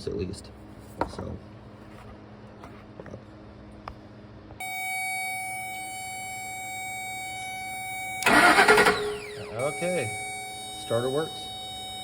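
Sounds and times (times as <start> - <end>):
high electronic beep tone: 4.6 - 12.0.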